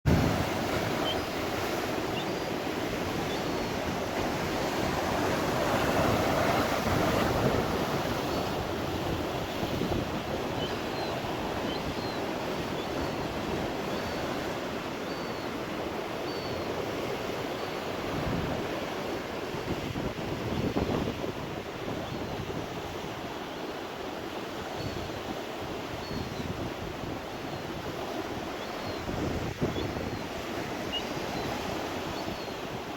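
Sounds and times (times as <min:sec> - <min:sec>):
wind gusting on microphone: 0:00.1 - 0:14.6, 0:18.0 - 0:23.1, 0:25.7 - 0:32.9
young gulls crying: 0:00.3 - 0:15.6.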